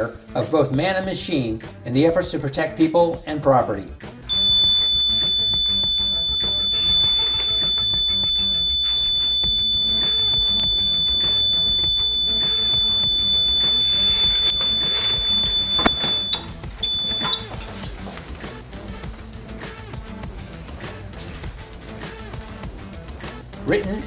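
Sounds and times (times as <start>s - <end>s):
background music: 0.0s - 24.0s
smoke alarm high-pitched tone: 4.3s - 18.1s.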